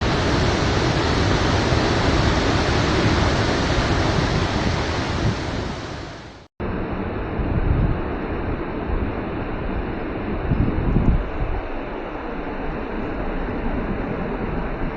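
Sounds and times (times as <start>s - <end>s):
waterfall roaring: 0.0s - 6.5s.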